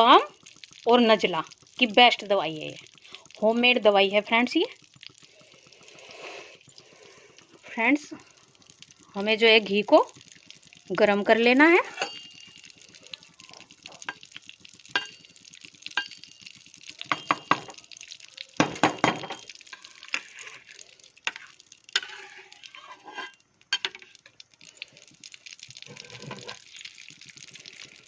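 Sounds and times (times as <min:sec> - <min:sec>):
spoon clinking and scraping in wok: 0:11.8 - 0:12.8, 0:14.9 - 0:17.8, 0:21.3 - 0:24.3, 0:25.8 - 0:26.6.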